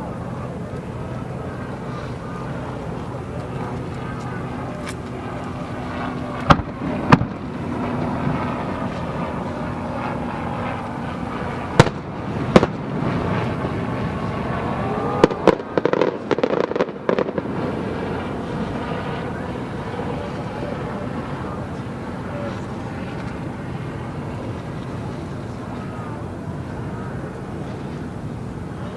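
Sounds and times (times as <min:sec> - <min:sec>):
firework pops and crackles: 0:06.4 - 0:07.4, 0:11.7 - 0:12.8, 0:15.2 - 0:17.5
firework bangs: 0:06.5 - 0:07.4, 0:11.6 - 0:18.4.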